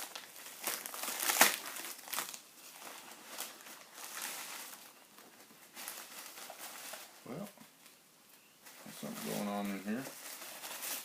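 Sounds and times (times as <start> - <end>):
packaging tearing and crinkling: 0.0 - 4.9.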